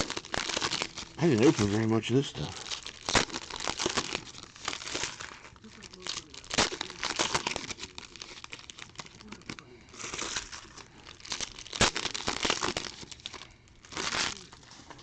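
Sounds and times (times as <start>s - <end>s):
card wrappers torn and crinkled: 0.0s - 15.0s.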